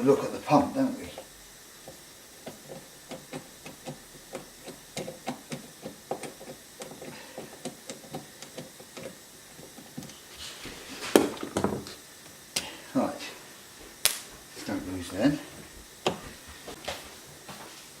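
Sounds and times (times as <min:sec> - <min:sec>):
screwdriver clicking on plastic: 0:01.2 - 0:10.1.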